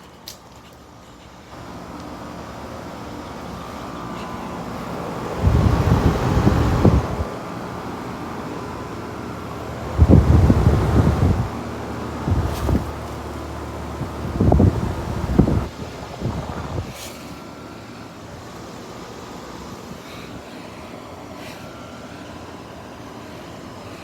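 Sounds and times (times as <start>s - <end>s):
road traffic: 0.0s - 24.0s
wind buffeting microphone: 4.8s - 7.4s, 9.6s - 17.0s.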